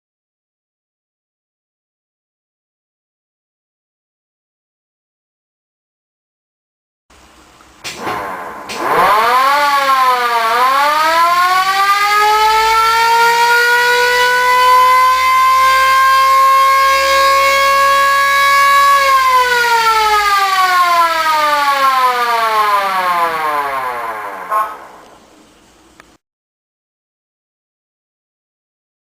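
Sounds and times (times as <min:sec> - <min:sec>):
mechanical siren wailing: 0:08.0 - 0:25.3.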